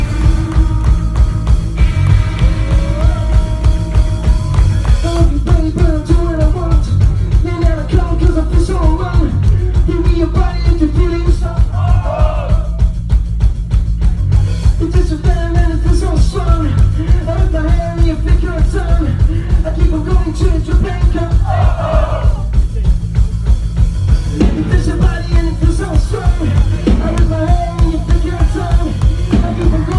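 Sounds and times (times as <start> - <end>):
loud rock music: 0.0 - 29.9
person singing or shouting: 21.2 - 22.5, 24.7 - 29.9.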